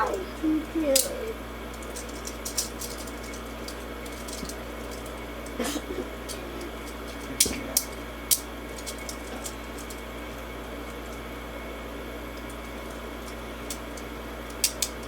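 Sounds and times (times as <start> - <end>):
steady background hiss: 0.0 - 3.3
handcuffs clicking and rattling: 0.0 - 5.6, 6.2 - 10.1, 12.4 - 15.0.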